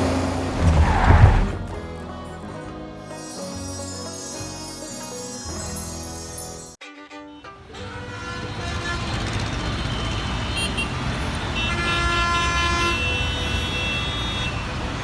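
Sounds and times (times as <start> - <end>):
road traffic noise: 0.0 - 1.8
long multi-tone horn honk: 11.6 - 14.6.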